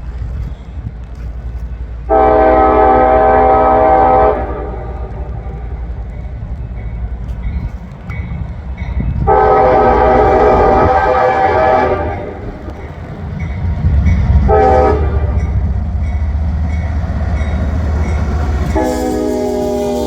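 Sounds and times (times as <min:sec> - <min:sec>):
train rumbling: 0:00.0 - 0:20.0
train air horn blasts: 0:02.1 - 0:05.3, 0:09.2 - 0:12.5, 0:14.4 - 0:15.6, 0:17.6 - 0:20.0.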